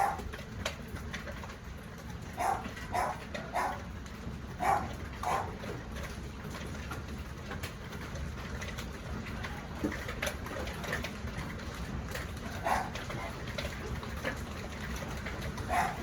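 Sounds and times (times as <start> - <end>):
dog barking: 0.0 - 0.2, 2.4 - 3.8, 4.6 - 5.6, 12.6 - 13.4, 15.7 - 16.0.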